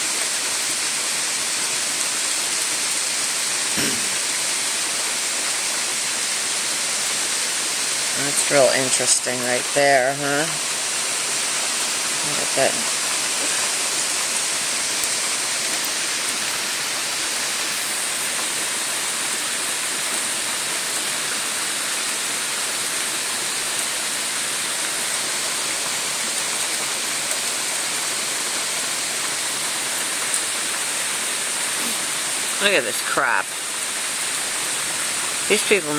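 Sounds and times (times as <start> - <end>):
rain hissing: 0.0 - 35.9.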